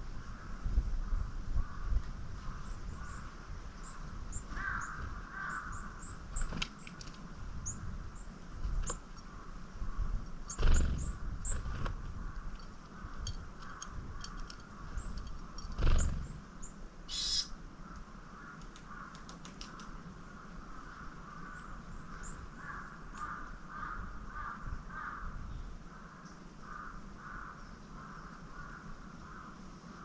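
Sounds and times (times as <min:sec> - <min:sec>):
pulsing bird calls: 0:10.4 - 0:17.6
faint clicks: 0:17.9 - 0:20.0.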